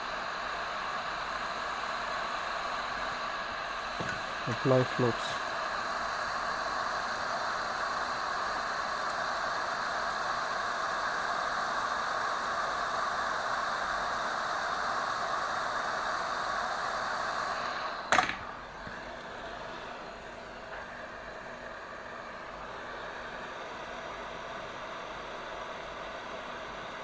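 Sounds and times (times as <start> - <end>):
hot air station hissing: 0.0 - 27.0
quiet steady whir: 0.0 - 27.0.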